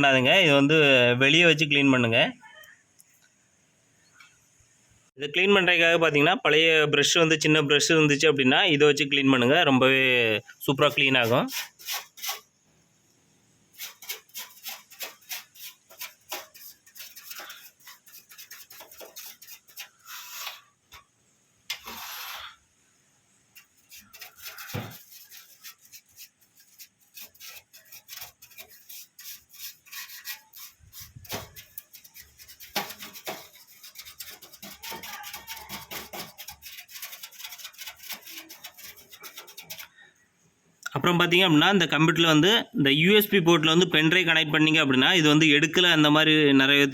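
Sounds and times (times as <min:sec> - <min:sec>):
brush scrubbing computer parts: 0:10.6 - 0:12.6, 0:13.7 - 0:21.1, 0:21.7 - 0:22.6, 0:23.5 - 0:40.0
brief hiss: 0:21.7 - 0:22.6.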